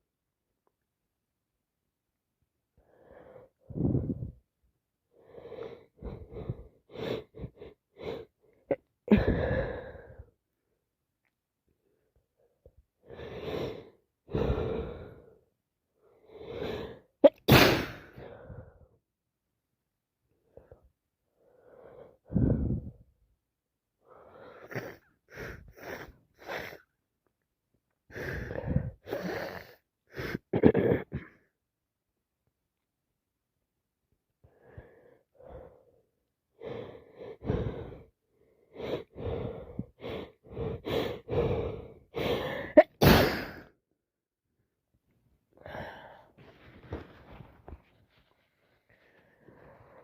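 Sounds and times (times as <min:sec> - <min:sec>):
woman breathing: 0:02.8 - 0:04.4, 0:05.2 - 0:10.4, 0:11.8 - 0:17.1, 0:18.0 - 0:18.9, 0:20.4 - 0:23.1, 0:24.0 - 0:26.9, 0:28.1 - 0:30.5, 0:34.4 - 0:43.0, 0:45.6 - 0:50.0
woman sneezing: 0:17.3 - 0:18.1, 0:42.8 - 0:43.6.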